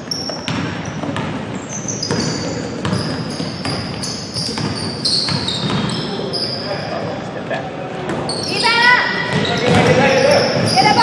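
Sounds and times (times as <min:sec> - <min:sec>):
basketball dribbling: 0:00.0 - 0:06.1, 0:09.3 - 0:11.0
sneaker squeaks: 0:00.0 - 0:07.2, 0:08.1 - 0:11.0
murmur of voices: 0:05.9 - 0:11.0.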